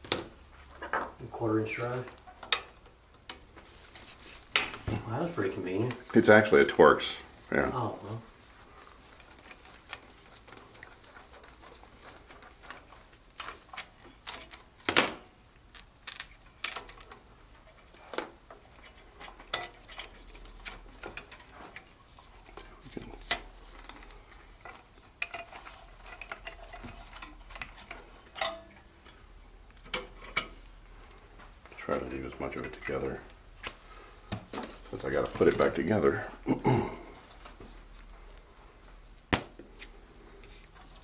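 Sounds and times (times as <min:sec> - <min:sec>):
hand tools clicking on metal: 0:24.6 - 0:28.8.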